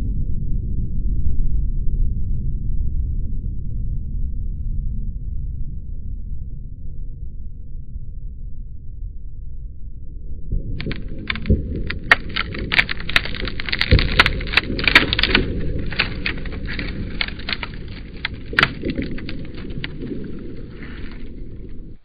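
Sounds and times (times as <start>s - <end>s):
sharp cracks and snaps: 10.8s - 22.0s.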